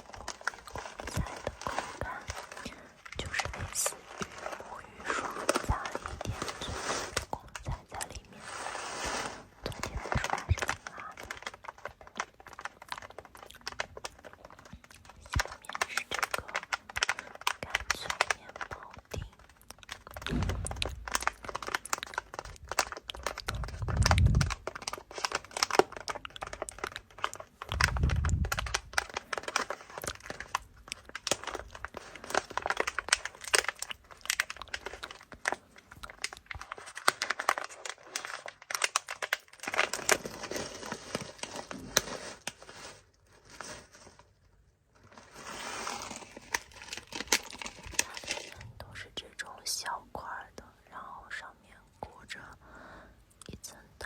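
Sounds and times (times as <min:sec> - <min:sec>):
crinkling and crackling: 0:00.0 - 0:54.0
dull low thumps: 0:20.3 - 0:21.2.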